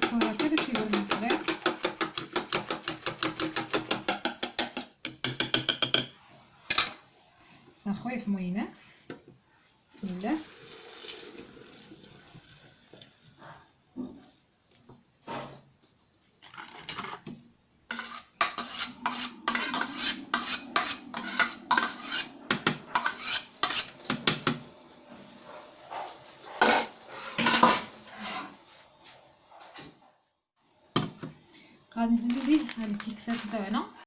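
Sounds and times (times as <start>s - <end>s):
spoon scraping a pot: 0.0s - 7.0s, 17.9s - 30.0s, 32.3s - 33.7s.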